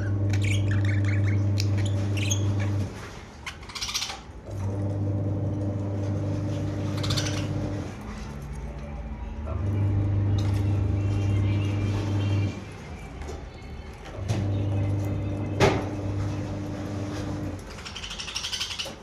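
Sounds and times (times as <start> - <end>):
budgies chirping: 0.0 - 4.3, 6.6 - 8.0, 9.6 - 13.1, 14.3 - 19.0
low electrical hum: 0.0 - 19.0.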